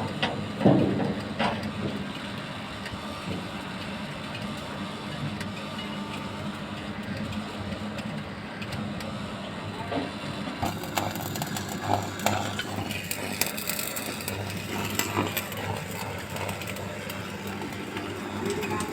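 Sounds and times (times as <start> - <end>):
machine engine running: 10.4 - 18.9.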